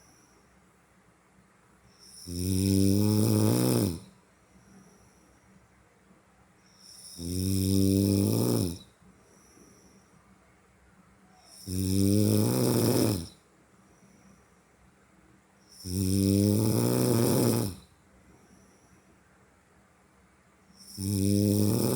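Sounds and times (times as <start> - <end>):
low buzzing snores: 1.9 - 5.4, 6.7 - 10.2, 11.4 - 14.3, 15.6 - 18.0, 20.7 - 21.9.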